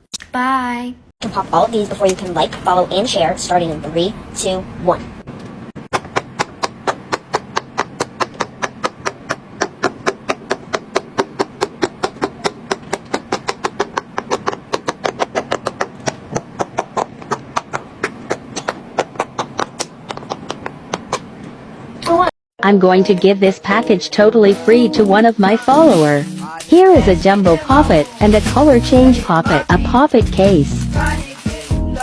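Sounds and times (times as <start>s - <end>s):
fidget toy bubbles popping: 5.9s - 21.3s.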